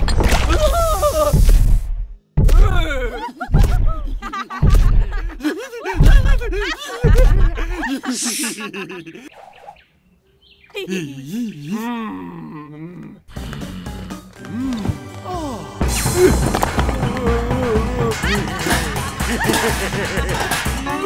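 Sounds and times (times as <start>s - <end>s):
character giggling: 2.8s - 9.4s.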